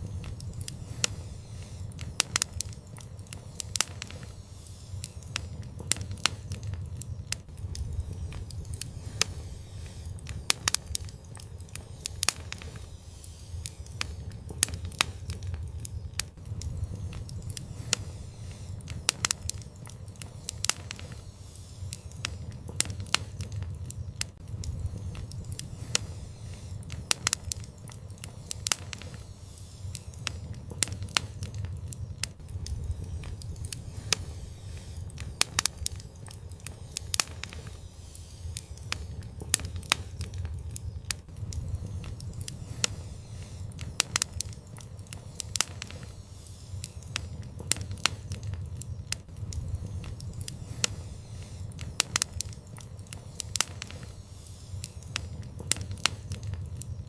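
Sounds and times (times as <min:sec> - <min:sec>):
low rumble: 0:00.0 - 0:46.2, 0:46.8 - 0:54.1
wood fire crackling: 0:00.0 - 0:57.0.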